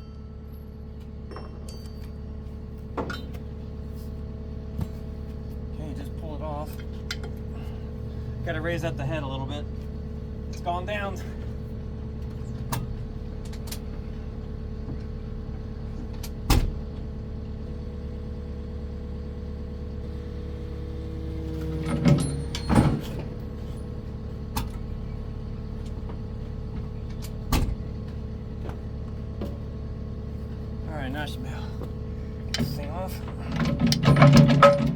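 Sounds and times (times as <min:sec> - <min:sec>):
diesel engine idling: 0:02.2 - 0:34.9
sharp metallic clunks: 0:32.5 - 0:34.9.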